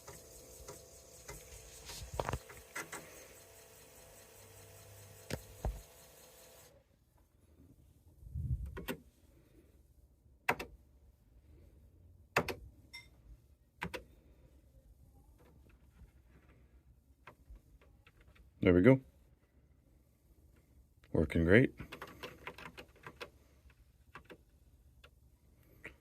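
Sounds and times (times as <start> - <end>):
computer whir: 0.0 - 6.8.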